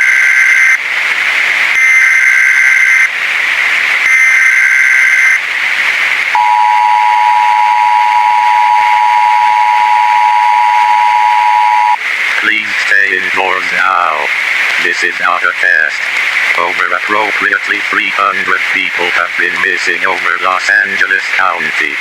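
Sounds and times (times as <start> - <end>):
static hiss: 0.0 - 22.0
two-tone attention signal: 1.8 - 3.1, 4.1 - 5.4, 6.4 - 12.0.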